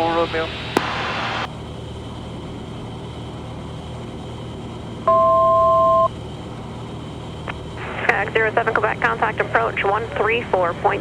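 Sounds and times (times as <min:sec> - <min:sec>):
aircraft engine drone: 0:00.0 - 0:05.2, 0:06.0 - 0:11.0.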